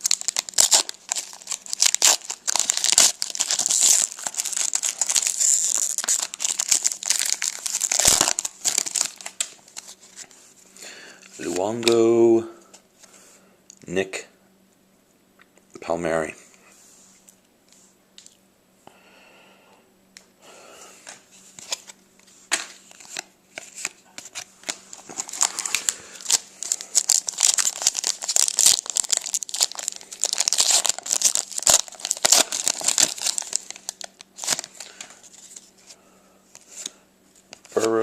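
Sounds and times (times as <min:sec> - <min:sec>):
foil wrapper crinkling and tearing: 0:00.0 - 0:10.2, 0:22.6 - 0:35.7.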